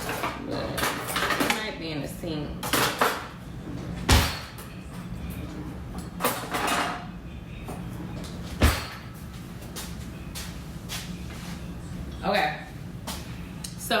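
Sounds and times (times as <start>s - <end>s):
kitchen items knocking and clattering: 0.0s - 1.8s, 2.6s - 3.3s, 4.0s - 4.6s
steady low hum: 0.0s - 14.0s.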